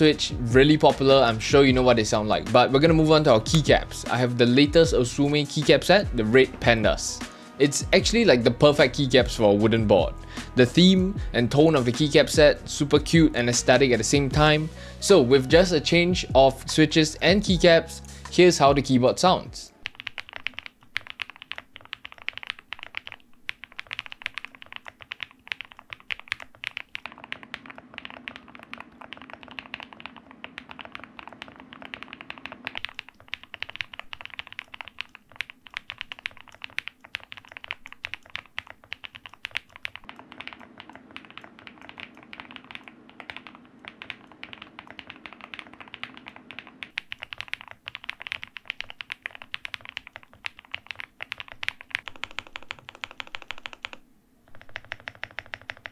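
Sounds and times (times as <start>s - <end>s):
mechanical keyboard typing: 19.8s - 55.9s.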